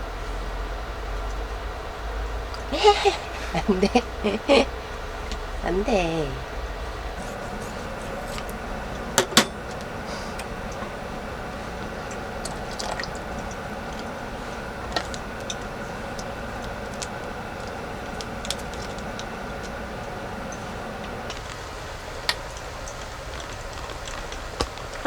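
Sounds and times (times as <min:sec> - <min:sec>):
steady hum: 0:00.0 - 0:25.0
cooking utensils clinking: 0:07.2 - 0:21.5.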